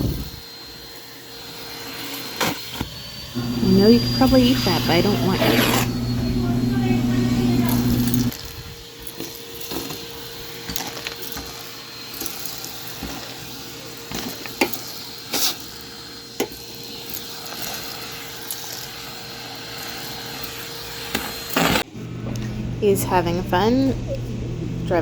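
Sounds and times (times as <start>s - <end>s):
faint steady hum: 3.3s - 8.3s.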